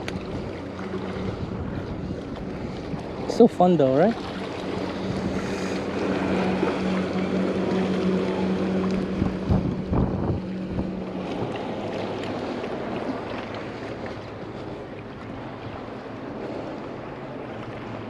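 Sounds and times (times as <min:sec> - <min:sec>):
wind noise on microphone: 0:00.0 - 0:03.6, 0:08.9 - 0:11.7
engine running: 0:00.0 - 0:18.0.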